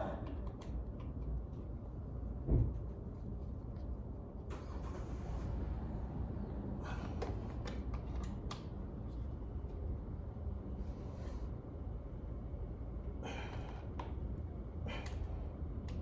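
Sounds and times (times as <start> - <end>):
heavy breaths: 6.6 - 7.6, 13.2 - 14.1.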